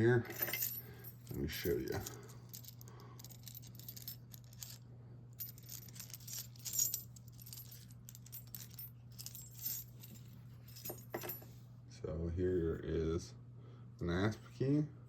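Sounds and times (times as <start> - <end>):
steady low hum: 0.0 - 15.0
keys jingling: 0.3 - 4.8, 5.4 - 11.5.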